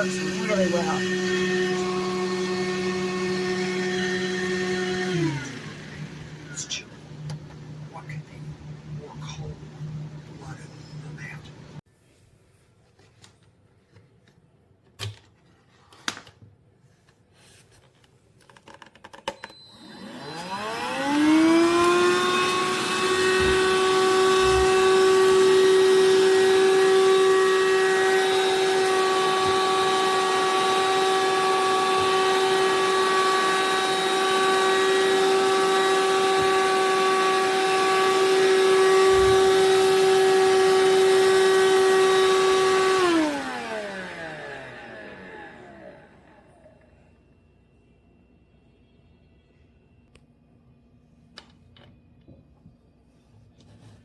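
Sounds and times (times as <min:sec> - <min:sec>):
handheld vacuum motor whine: 0:00.0 - 0:07.6, 0:19.3 - 0:47.0.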